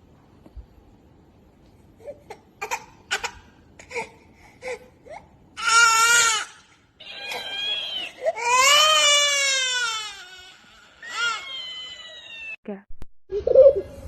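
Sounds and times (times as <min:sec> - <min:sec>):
baby whimpering: 0:03.2 - 0:12.6
baby crying loudly: 0:05.6 - 0:12.6.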